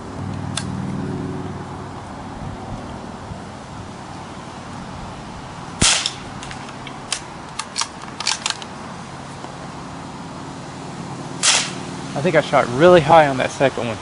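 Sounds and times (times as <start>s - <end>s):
rifle shot crack: 5.8s - 8.6s, 11.4s - 11.9s
rifle bolt metallic clicks: 5.9s - 8.7s.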